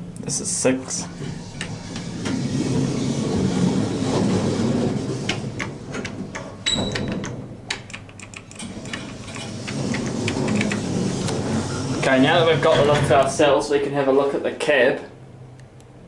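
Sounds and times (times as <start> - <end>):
lift doors rumbling clatter: 0.9 - 14.1.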